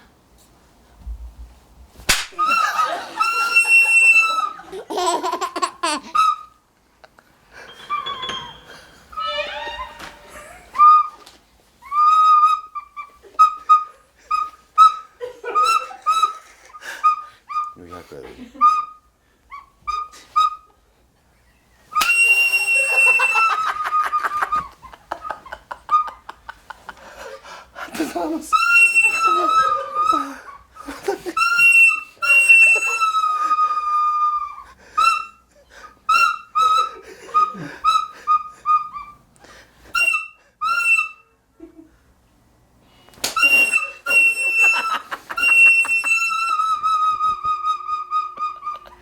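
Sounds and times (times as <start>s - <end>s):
sharp slap: 2.0s - 2.5s, 43.2s - 43.4s
wind instrument squealing: 2.3s - 6.6s, 7.6s - 20.8s, 22.0s - 26.5s, 28.5s - 35.5s, 36.1s - 39.3s, 39.9s - 41.4s, 43.2s - 49.0s.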